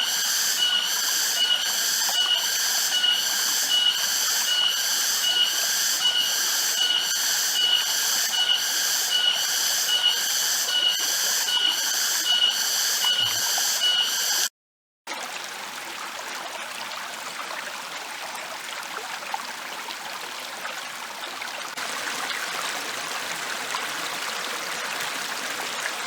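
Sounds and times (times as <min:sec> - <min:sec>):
pulsing insect chorus: 0:00.0 - 0:14.5
steady ringing tone: 0:00.0 - 0:14.5.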